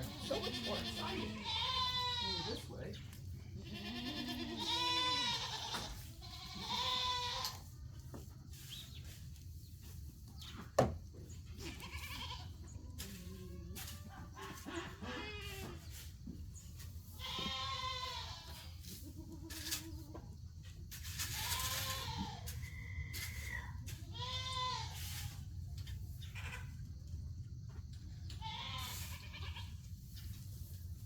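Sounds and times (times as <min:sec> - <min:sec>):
goats bleating: 0:00.0 - 0:02.8, 0:03.6 - 0:07.6, 0:11.6 - 0:12.5, 0:17.2 - 0:20.0, 0:24.1 - 0:25.0, 0:28.4 - 0:29.7.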